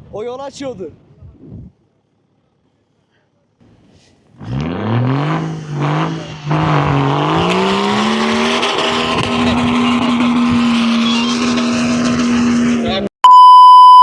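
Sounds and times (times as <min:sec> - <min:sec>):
off-road vehicle engine revving: 0:04.3 - 0:13.1.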